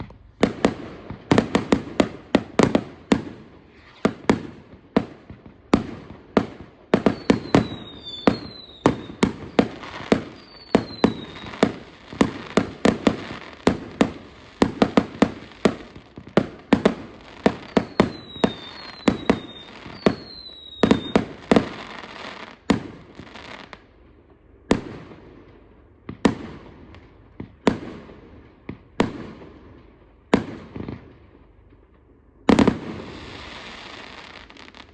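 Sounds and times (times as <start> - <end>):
fireworks bangs and crackles: 0.0 - 34.9
falling whistles: 7.1 - 9.3, 10.4 - 11.6.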